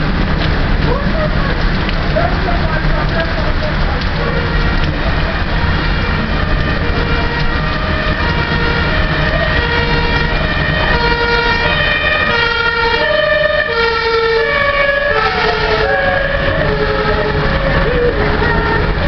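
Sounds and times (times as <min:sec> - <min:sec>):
two-tone emergency siren: 0:04.2 - 0:19.0.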